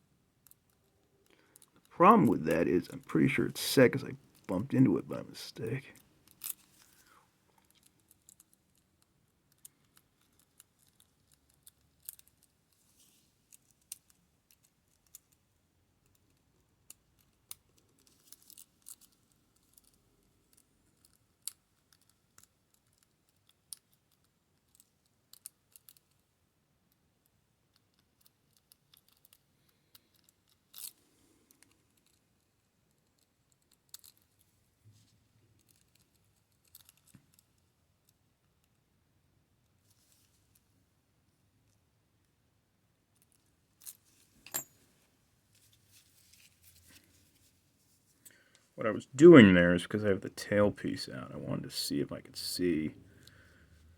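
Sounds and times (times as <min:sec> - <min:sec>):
lock pick clicks and scratches: 0:27.7 - 0:34.4.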